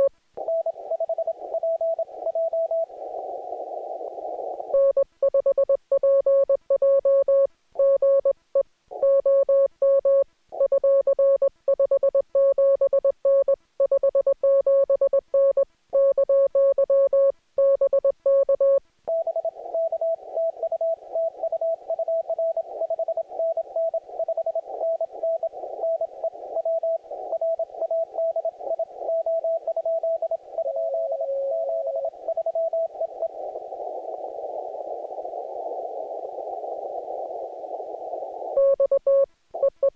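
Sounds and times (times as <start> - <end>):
radio receiver hiss: 0.8 - 4.8, 22.5 - 38.9
weak morse signal: 14.0 - 39.9.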